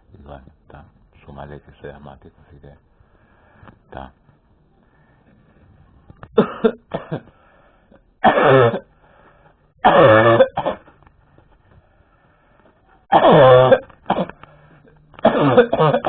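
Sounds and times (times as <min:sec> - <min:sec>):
man coughing hoarsely: 0:06.4 - 0:07.3, 0:08.2 - 0:08.8, 0:09.8 - 0:10.9, 0:13.1 - 0:14.4, 0:15.2 - 0:16.0.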